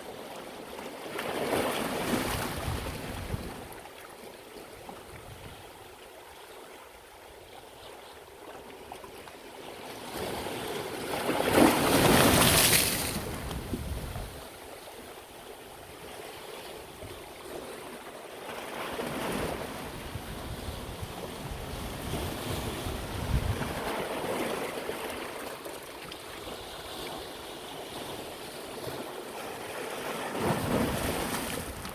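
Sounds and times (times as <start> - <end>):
sea waves washing onto shore: 11.2 - 14.4.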